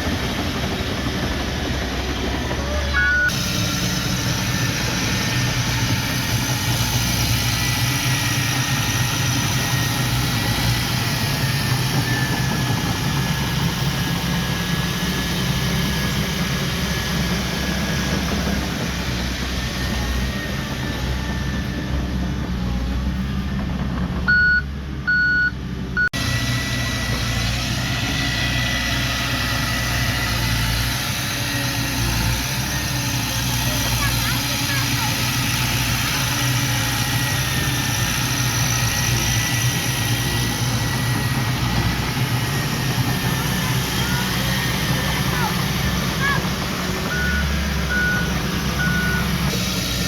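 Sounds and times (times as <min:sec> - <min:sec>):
diesel engine running: 0:00.0 - 0:50.0
reversing alarm beeps: 0:02.9 - 0:03.4, 0:24.3 - 0:26.2, 0:47.0 - 0:49.5.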